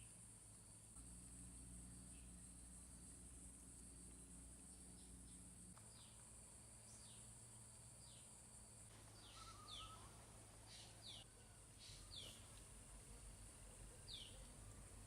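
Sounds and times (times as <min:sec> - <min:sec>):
bird chirping: 0:09.1 - 0:12.5, 0:13.7 - 0:14.5.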